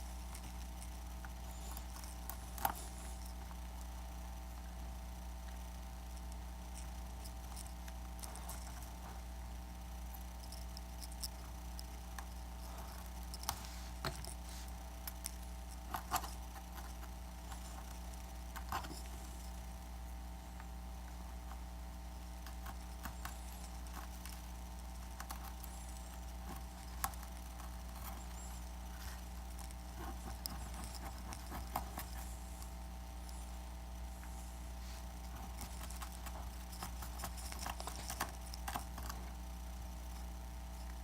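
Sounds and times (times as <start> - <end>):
steady low hum: 0.0 - 41.0
hand tools clicking and scraping: 25.2 - 33.4.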